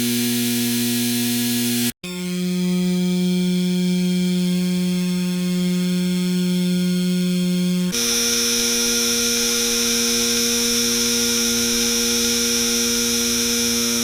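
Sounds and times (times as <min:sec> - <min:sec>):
power line electrical hum: 0:00.0 - 0:01.9, 0:08.0 - 0:14.0.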